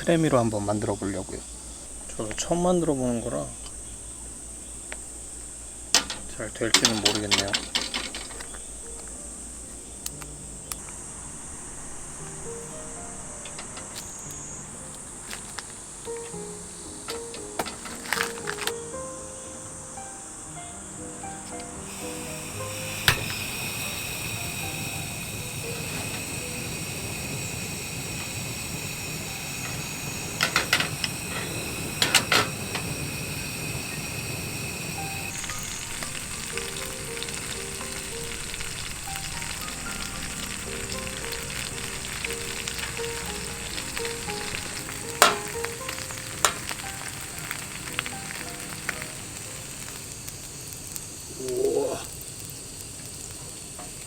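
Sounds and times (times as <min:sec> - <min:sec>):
food sizzling in a pan: 0:00.0 - 0:54.0
utensil clacking against pan: 0:06.0 - 0:08.6, 0:45.2 - 0:45.6.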